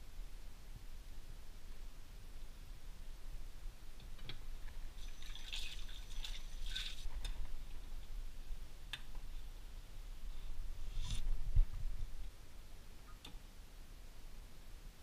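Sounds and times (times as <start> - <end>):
water dripping and splashing: 4.9 - 7.4.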